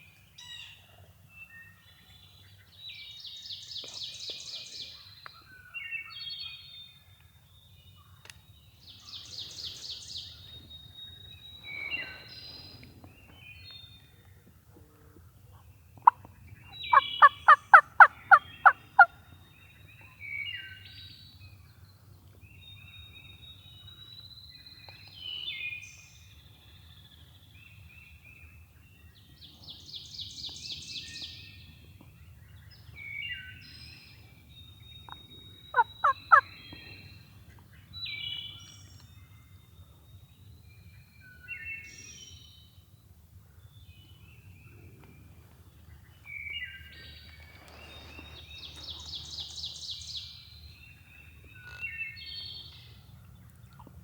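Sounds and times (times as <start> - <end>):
songbirds chirping and trilling: 0.1 - 54.0
wild turkey yelping: 16.0 - 19.1, 35.1 - 36.5.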